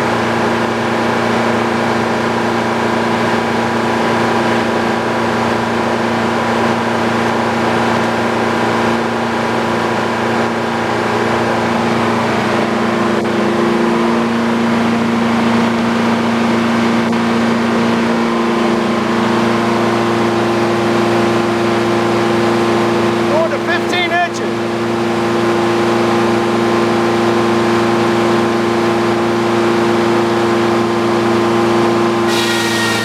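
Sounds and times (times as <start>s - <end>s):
sawmill drone: 0.0s - 33.0s.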